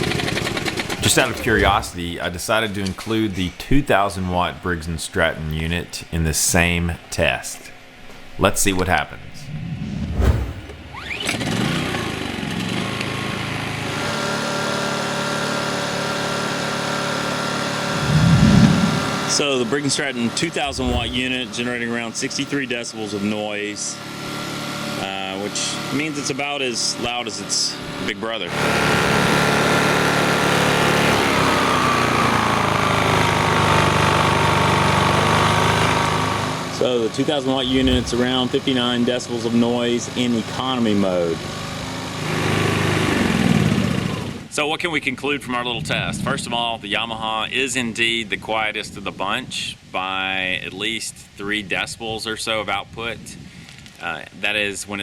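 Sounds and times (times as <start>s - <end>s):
generator engine running: 0.0s - 3.6s, 10.7s - 19.5s, 28.5s - 44.5s.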